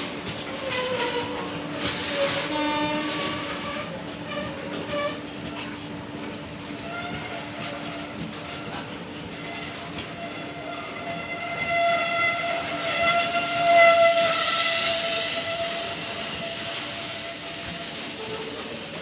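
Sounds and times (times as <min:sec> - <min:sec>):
rush of passing train: 0:00.0 - 0:19.0
train horn: 0:02.1 - 0:03.9, 0:09.4 - 0:17.6.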